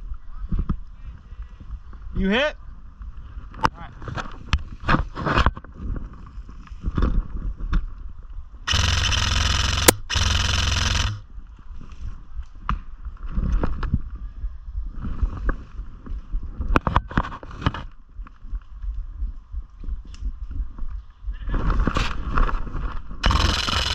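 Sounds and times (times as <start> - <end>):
airsoft gun full-auto bursts: 8.7 - 11.2, 23.2 - 23.9
movement clicks: 8.7 - 11.2, 23.2 - 23.9.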